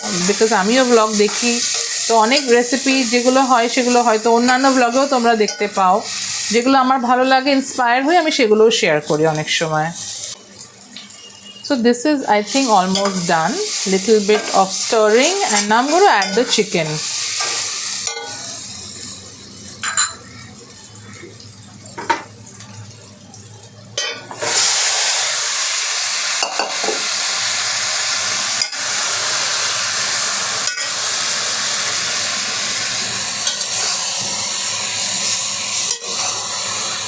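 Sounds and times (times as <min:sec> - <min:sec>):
chicken sizzling in hot oil: 0:00.0 - 0:37.0
spoon stirring in a pot: 0:15.4 - 0:16.6
spoon clinking on pot: 0:15.6 - 0:16.6, 0:19.8 - 0:20.2.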